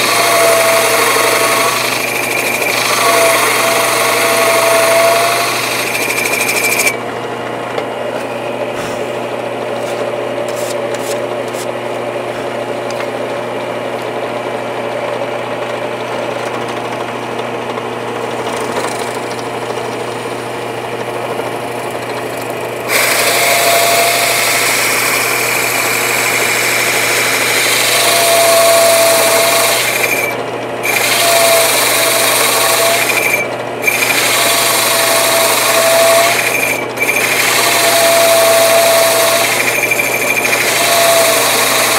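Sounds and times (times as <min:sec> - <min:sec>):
hole saw cutting wood: 0:00.0 - 0:07.0, 0:21.9 - 0:41.9
drill press motor hum: 0:00.0 - 0:41.9.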